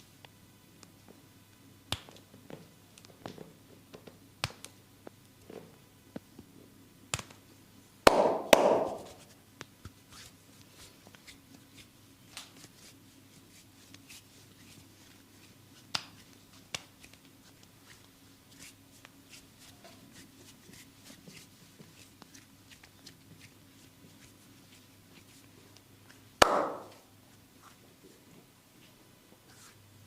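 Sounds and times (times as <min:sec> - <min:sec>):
hands slapping bare skin: 0:01.9 - 0:02.2, 0:04.4 - 0:04.8, 0:07.1 - 0:07.4, 0:08.1 - 0:09.3, 0:12.3 - 0:12.7, 0:15.8 - 0:17.3, 0:26.4 - 0:27.0.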